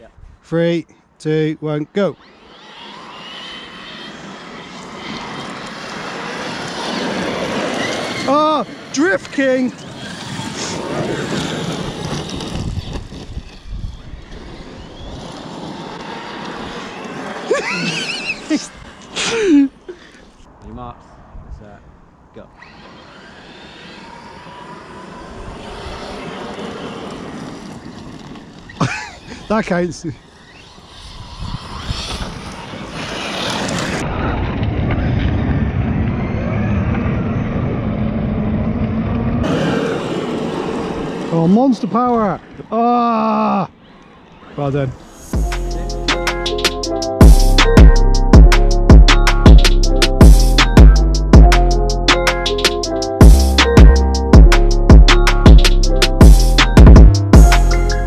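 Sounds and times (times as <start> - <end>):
electric motors whining: 1.9 - 20.4, 22.6 - 34.1, 39.4 - 48.8
rc trucks racing over stones: 2.0 - 20.4, 22.5 - 36.6, 39.4 - 42.8
tyres on gravel rumble: 4.4 - 17.5, 23.9 - 30.8
wind on microphone: 9.8 - 16.0, 20.6 - 22.2, 25.3 - 26.5, 30.6 - 38.7.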